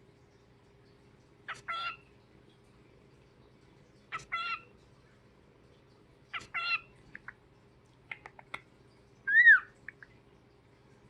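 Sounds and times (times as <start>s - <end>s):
cockatiel calling: 1.5s - 2.0s, 4.2s - 4.6s, 6.4s - 6.9s, 9.3s - 9.7s.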